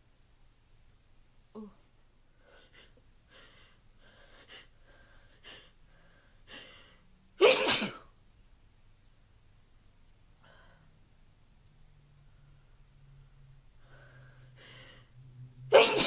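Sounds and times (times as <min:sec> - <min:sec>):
person's hitching breaths: 0:02.4 - 0:07.7, 0:13.8 - 0:16.0
person sneezing: 0:07.4 - 0:08.0, 0:15.7 - 0:16.0.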